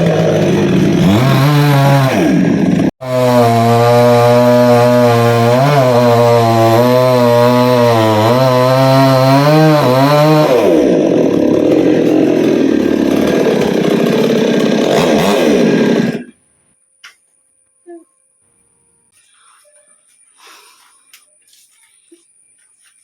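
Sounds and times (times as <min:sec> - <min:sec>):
chainsaw cutting wood: 0:00.0 - 0:16.4.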